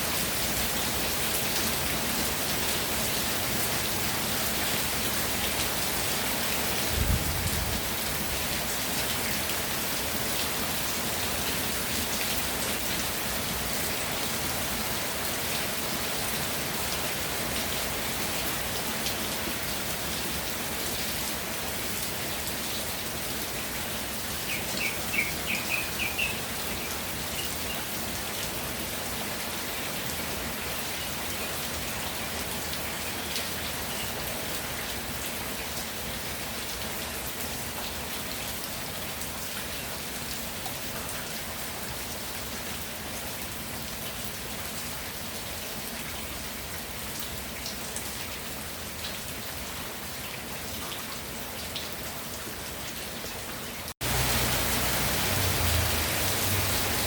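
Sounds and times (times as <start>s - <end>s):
steady rain: 0.0s - 57.0s
bird chirping: 24.5s - 27.9s.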